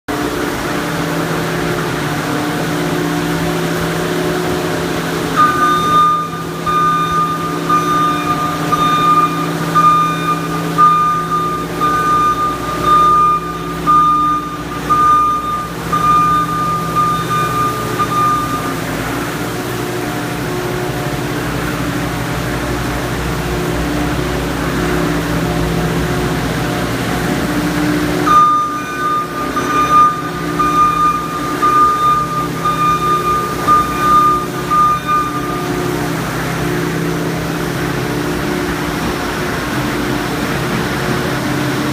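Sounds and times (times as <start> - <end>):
diesel engine running: 0.1 - 41.9
reversing alarm beeping: 2.7 - 23.2, 26.6 - 39.0.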